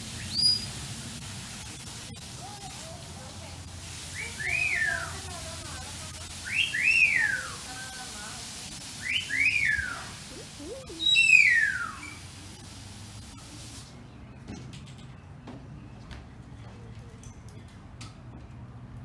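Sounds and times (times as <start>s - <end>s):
rising and falling whistles: 9.0s - 10.1s.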